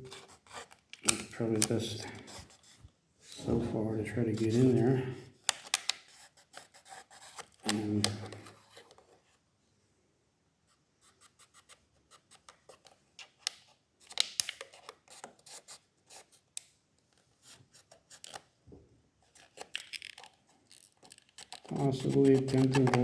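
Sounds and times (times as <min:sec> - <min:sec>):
plastic scraping and clicking: 0:00.1 - 0:02.6, 0:05.4 - 0:09.2, 0:19.2 - 0:23.0.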